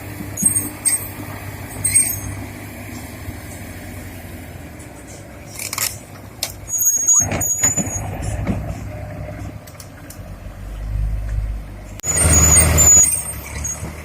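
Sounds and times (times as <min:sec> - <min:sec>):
heavy diesel machinery droning: 0:00.0 - 0:14.0
high squeal: 0:01.8 - 0:02.4, 0:06.7 - 0:08.4, 0:12.0 - 0:14.0.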